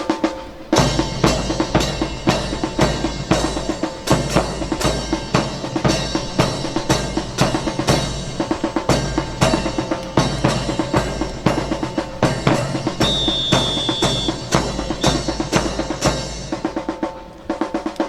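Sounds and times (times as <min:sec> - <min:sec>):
marching drum cadence: 0:00.0 - 0:18.0.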